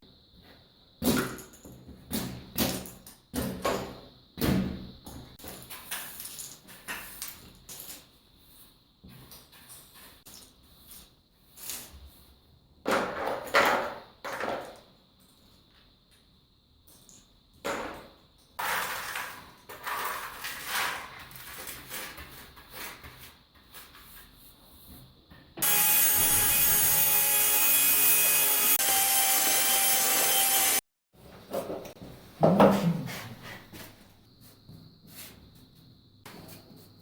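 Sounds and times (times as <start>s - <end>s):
power tool running: 25.6s - 30.8s.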